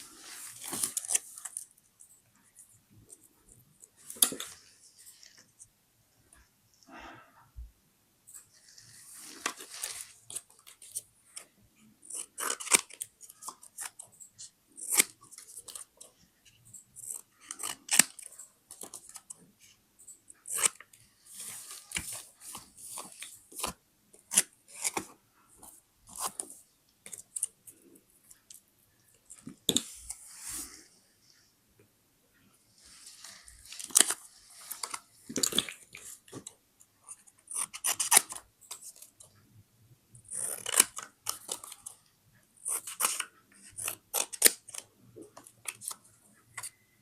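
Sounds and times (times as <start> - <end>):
paper rustling: 0.0 - 1.7, 8.6 - 11.0
scissors cutting paper: 9.3 - 16.1, 17.0 - 19.4, 20.4 - 25.1, 37.1 - 39.2, 40.2 - 42.0, 42.6 - 46.7.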